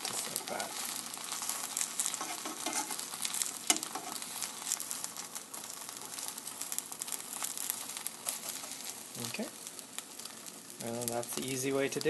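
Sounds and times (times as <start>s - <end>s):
rice sheet sizzling in oiled pan: 0.0s - 12.0s.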